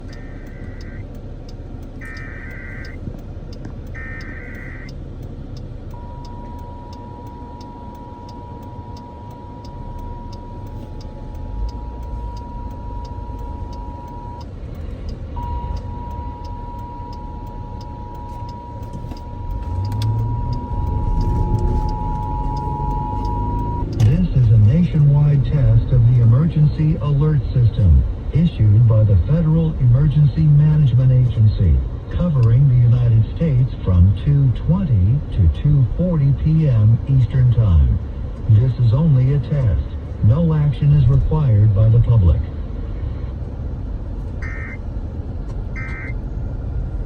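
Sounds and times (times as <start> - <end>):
warbling data tones: 0.0 - 1.0
car road and engine rumble: 0.0 - 47.0
two-tone attention signal: 6.0 - 14.4, 15.4 - 23.8.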